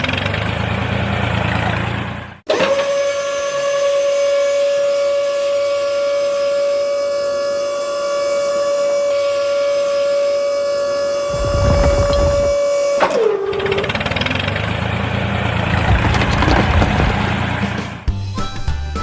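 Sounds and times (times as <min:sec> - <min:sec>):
siren-like pitched tone: 0:03.1 - 0:14.4
low rumble: 0:11.3 - 0:12.6.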